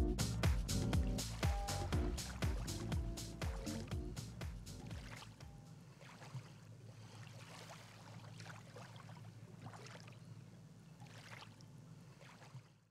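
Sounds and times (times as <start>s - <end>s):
steady low hum: 0.0s - 7.4s
water lapping and splashing: 1.3s - 12.9s.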